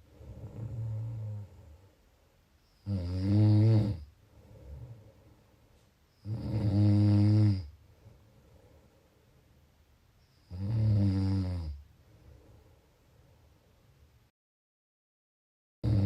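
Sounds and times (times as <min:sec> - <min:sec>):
person snoring: 0:00.1 - 0:01.8, 0:02.8 - 0:05.2, 0:06.2 - 0:07.8, 0:10.5 - 0:11.8.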